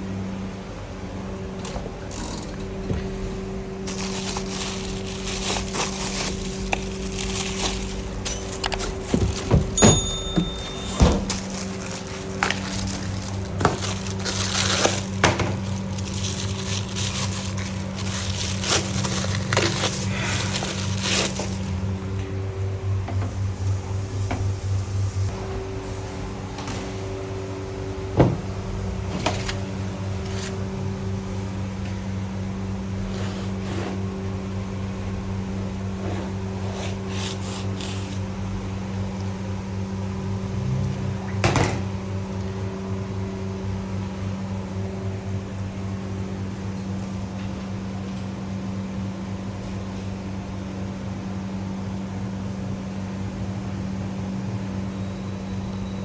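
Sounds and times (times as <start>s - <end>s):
steady hum: 0.0s - 39.8s
kitchen knocks and clatter: 7.4s - 14.4s.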